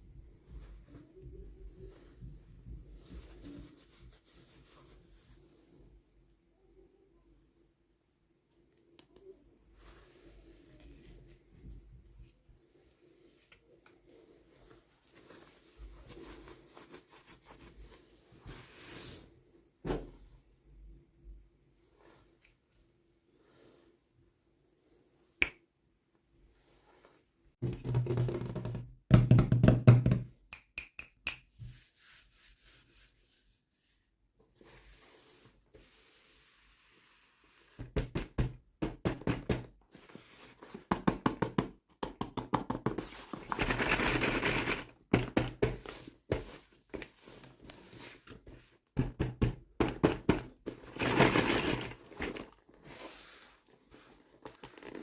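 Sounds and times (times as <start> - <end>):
packaging crinkling: 54.2 - 55.0.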